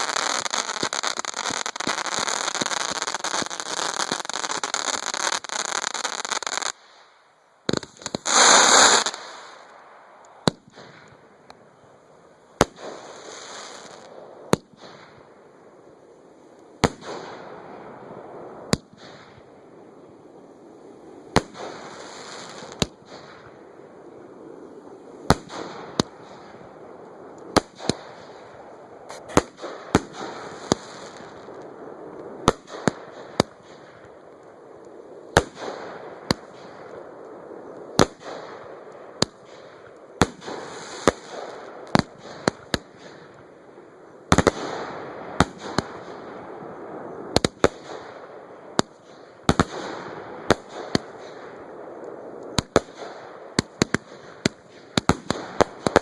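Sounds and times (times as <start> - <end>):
fireworks bangs: 0.0 - 7.1, 7.7 - 9.7, 24.5 - 34.2, 44.3 - 56.0.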